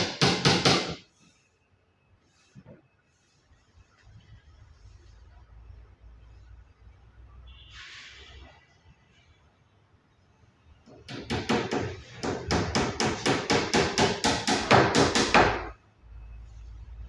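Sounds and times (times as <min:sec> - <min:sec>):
hammer nailing into plywood: 0:00.0 - 0:01.0, 0:11.1 - 0:15.7.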